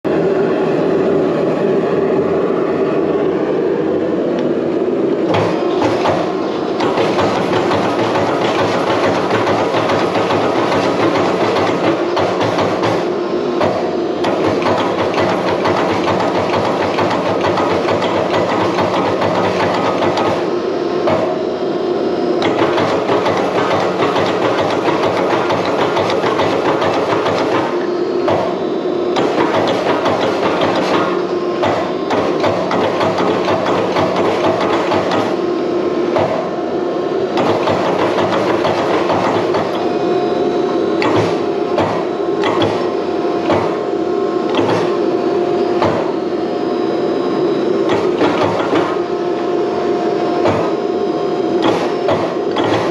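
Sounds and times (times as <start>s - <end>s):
hammer striking steel: 5.3s - 21.4s, 22.4s - 28.6s, 29.2s - 35.4s, 36.1s - 36.5s, 37.4s - 39.9s, 41.0s - 43.9s, 44.5s - 45.0s, 45.8s - 46.1s, 47.8s - 49.0s, 50.4s - 50.8s, 51.6s - 52.9s.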